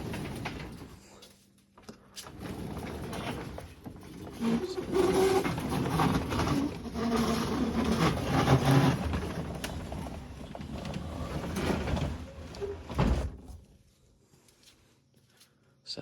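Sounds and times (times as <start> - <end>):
garage door rollers rattling: 0.0 - 1.0, 2.3 - 13.6.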